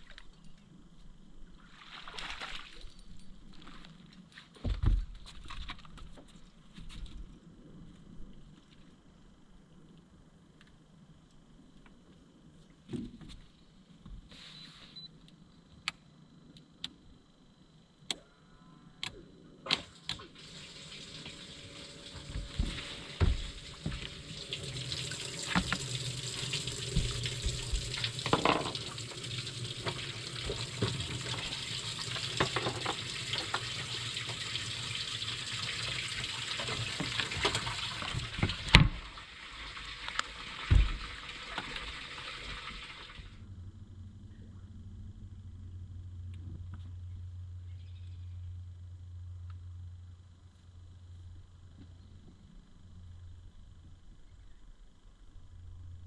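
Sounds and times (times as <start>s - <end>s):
water spraying: 19.9s - 43.4s.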